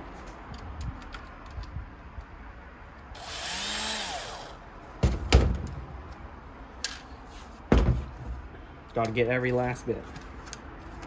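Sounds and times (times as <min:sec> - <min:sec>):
electric screwdriver motor running: 0:03.2 - 0:04.6.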